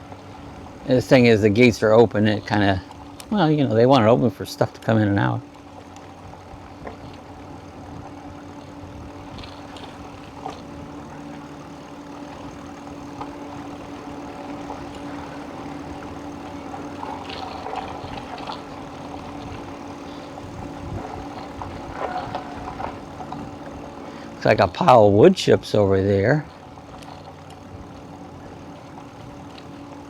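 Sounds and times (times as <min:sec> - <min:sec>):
electric motor hum: 0:00.0 - 0:30.0
wind noise: 0:17.0 - 0:24.0.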